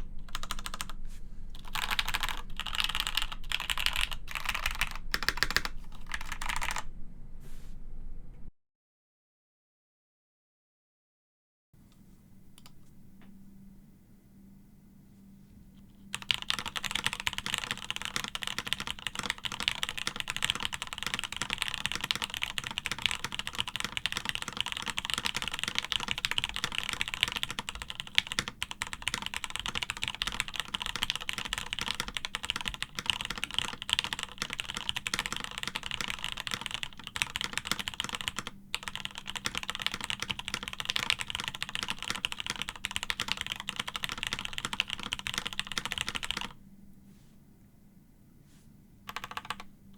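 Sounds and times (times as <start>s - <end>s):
fast typing on mechanical keyboard: 0.0s - 0.9s, 1.6s - 6.9s, 16.1s - 46.6s, 49.1s - 49.7s.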